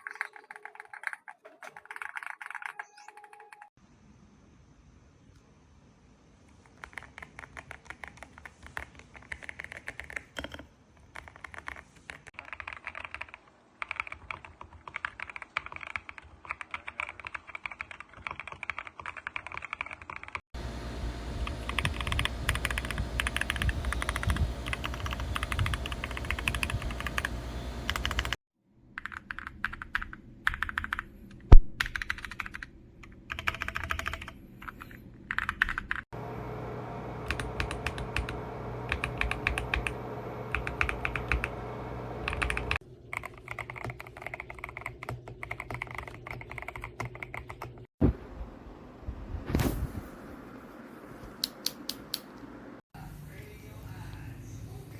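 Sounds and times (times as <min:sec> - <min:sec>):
mechanical keyboard typing: 0:00.0 - 0:03.7, 0:06.6 - 0:20.4, 0:21.7 - 0:28.4, 0:29.0 - 0:31.1, 0:31.8 - 0:36.0, 0:37.2 - 0:41.6, 0:42.2 - 0:47.9.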